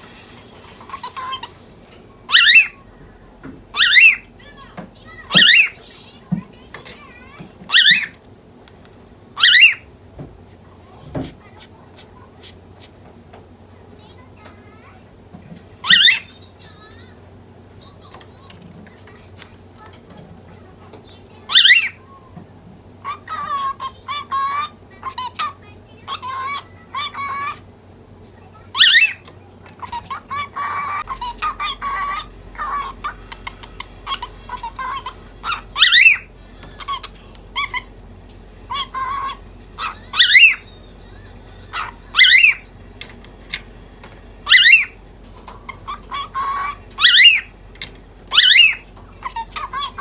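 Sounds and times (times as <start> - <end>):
cockatiel chirping: 0.6 - 1.6, 2.2 - 2.9, 3.7 - 8.2, 9.4 - 9.9, 15.8 - 17.1, 21.2 - 22.1, 23.0 - 27.6, 28.7 - 50.0
cockatiel sharp calls: 2.3 - 2.8, 3.7 - 6.4, 7.7 - 8.2, 9.4 - 9.9, 15.8 - 16.4, 21.5 - 22.0, 23.0 - 27.6, 28.7 - 38.0, 38.6 - 43.6, 44.4 - 50.0.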